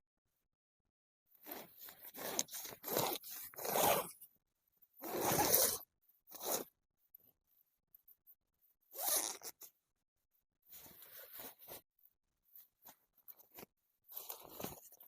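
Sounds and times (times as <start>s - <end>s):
zipper being pulled: 1.4s - 4.2s, 5.0s - 6.7s, 8.9s - 9.7s, 10.7s - 11.8s, 13.5s - 15.0s.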